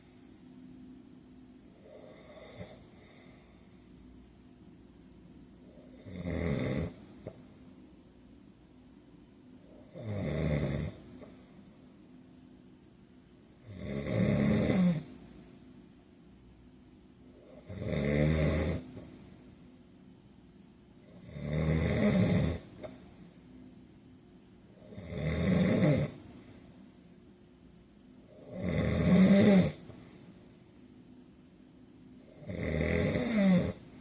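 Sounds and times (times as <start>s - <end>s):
man snoring: 1.8s - 3.6s, 5.7s - 7.4s, 9.7s - 11.1s, 13.6s - 15.2s, 17.4s - 19.0s, 21.0s - 22.9s, 24.8s - 26.2s, 28.3s - 29.9s, 32.2s - 33.8s.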